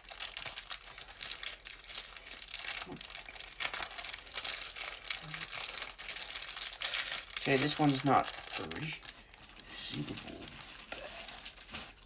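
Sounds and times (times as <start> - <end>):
plastic bag crinkling: 0.0 - 12.0.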